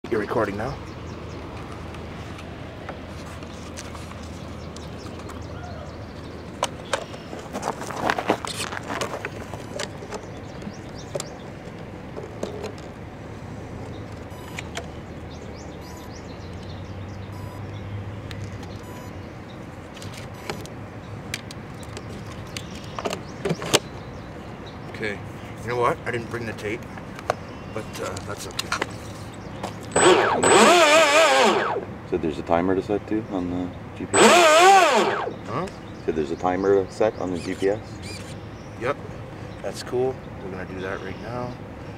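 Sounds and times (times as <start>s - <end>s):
knocks and clatters of handling: 6.6s - 10.3s
engine idling: 30.0s - 31.9s, 34.2s - 35.4s.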